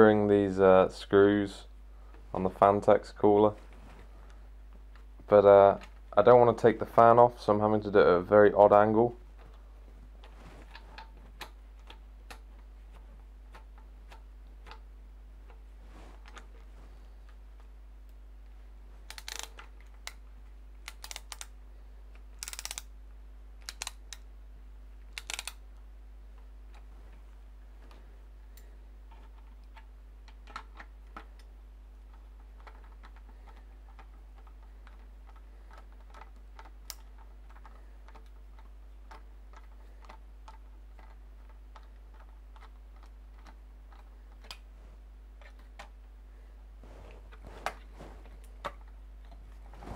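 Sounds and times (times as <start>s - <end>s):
screwdriver clicking and scraping: 19.1s - 20.2s, 20.8s - 21.5s, 22.4s - 22.9s, 25.2s - 25.6s.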